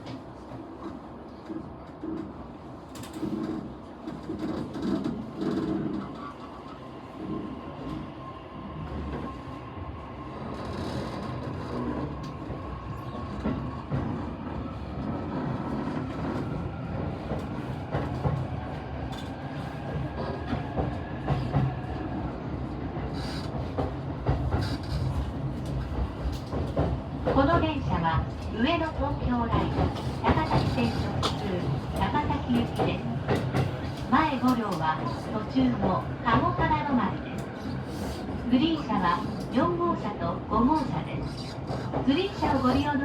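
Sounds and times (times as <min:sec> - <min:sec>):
train running rumble: 0:10.4 - 0:36.6.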